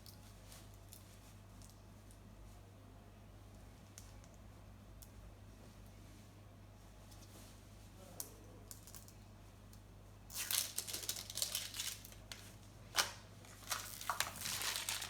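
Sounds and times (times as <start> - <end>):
plastic packaging crinkling: 10.3 - 15.0.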